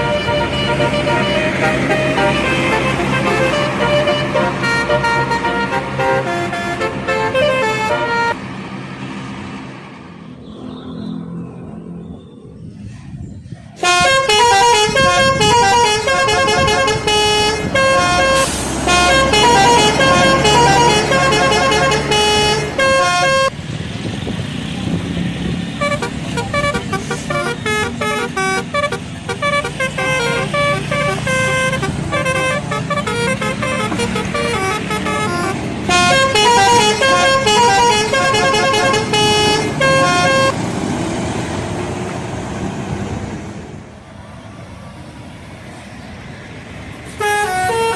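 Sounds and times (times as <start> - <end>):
multi-tone musical air horn: 0.0 - 8.4, 13.8 - 23.6, 25.8 - 40.6, 47.1 - 47.9
bus engine rumble: 0.0 - 47.9.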